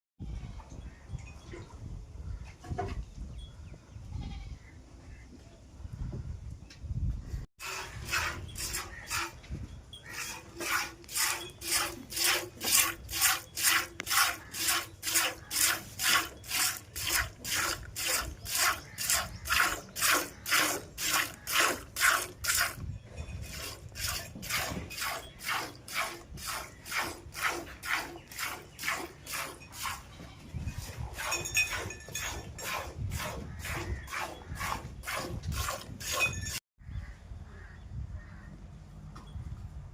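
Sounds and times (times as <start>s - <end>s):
milk squirting into a pail: 10.6s - 22.8s.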